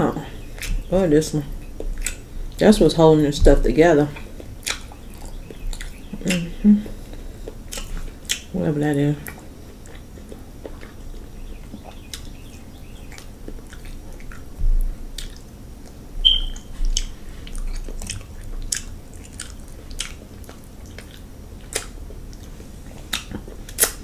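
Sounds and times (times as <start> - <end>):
wet chewing and lip smacking: 0.4 - 2.6, 4.0 - 8.5, 9.2 - 24.0
mouth clicks: 16.2 - 17.1.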